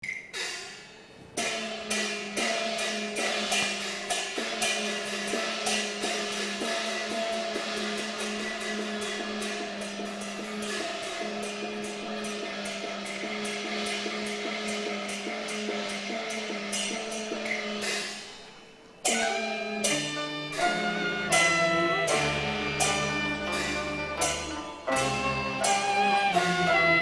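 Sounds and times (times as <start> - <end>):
sharp percussion strikes: 0.0 - 27.0
opera instrumental ensemble: 19.0 - 27.0.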